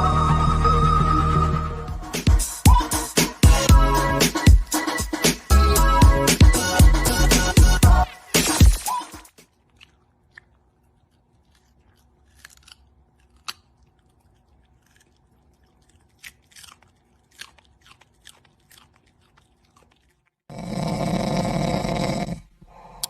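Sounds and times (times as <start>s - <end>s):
crunchy chewing: 9.3s - 21.0s.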